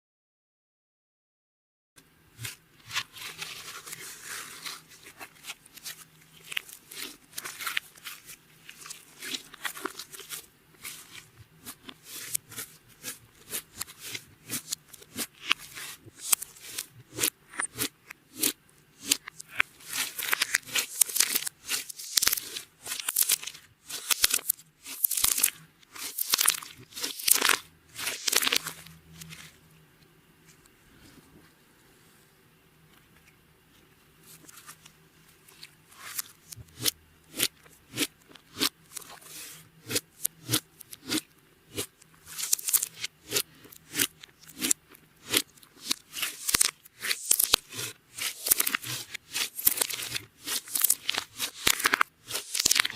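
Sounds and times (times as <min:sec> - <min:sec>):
slime crackling and popping: 0:13.0 - 0:28.9, 0:39.8 - 0:52.9.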